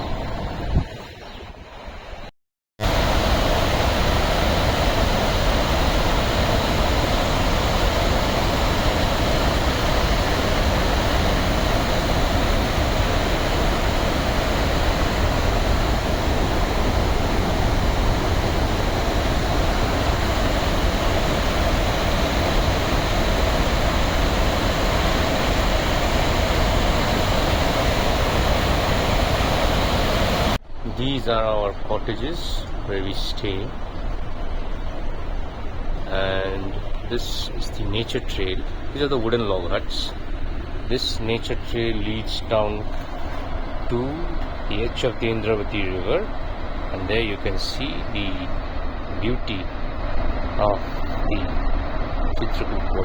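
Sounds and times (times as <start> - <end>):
waterfall roaring: 2.8 - 30.6.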